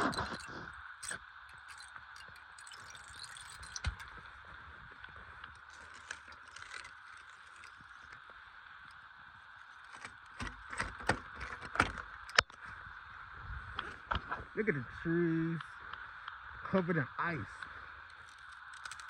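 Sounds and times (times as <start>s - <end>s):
ice-crusted snow crunching: 0.0s - 10.8s.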